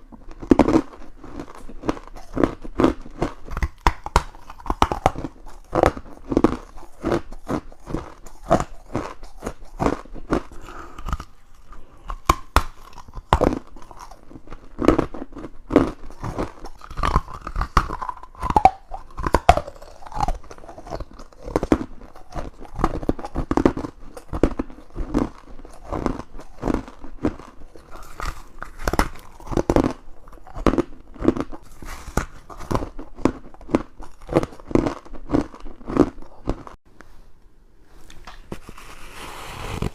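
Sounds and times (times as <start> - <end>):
crunching bites into ice: 14.8 - 36.7.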